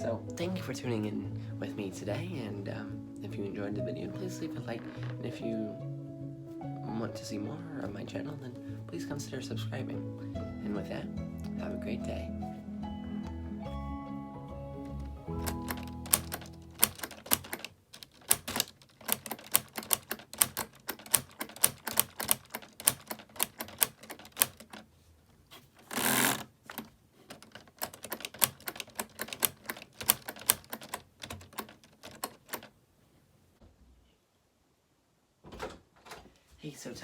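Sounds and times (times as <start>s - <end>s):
plastic typewriter keys clacking: 15.3s - 24.9s, 25.9s - 32.7s.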